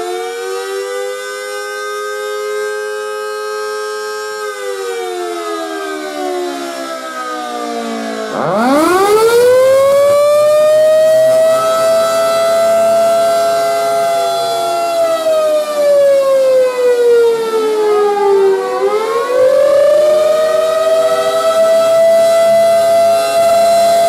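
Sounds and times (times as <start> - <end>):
tornado siren wailing: 0.0 - 24.0.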